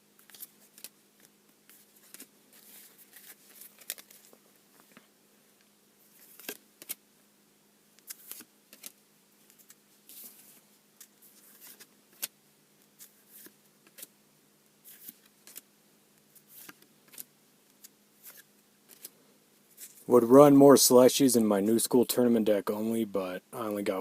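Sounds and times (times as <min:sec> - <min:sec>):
faint steady hum: 0:00.0 - 0:24.0
cards clicking and rustling: 0:00.2 - 0:05.0, 0:06.1 - 0:07.0, 0:08.0 - 0:14.1, 0:14.8 - 0:15.7, 0:16.3 - 0:19.2.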